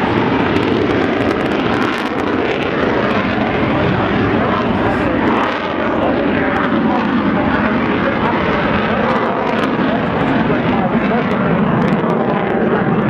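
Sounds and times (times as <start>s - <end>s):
jet engine noise: 0.0s - 13.0s.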